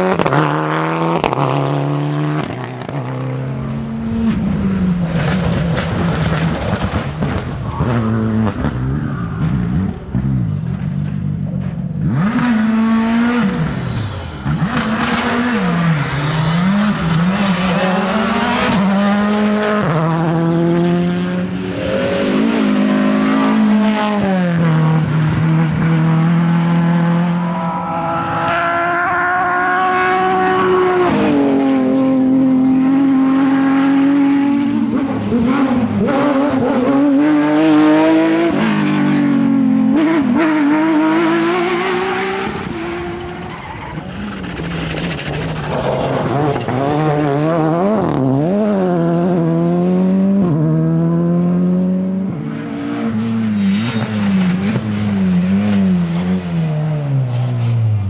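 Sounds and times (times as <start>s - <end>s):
rally car engines revving: 0.0s - 58.0s.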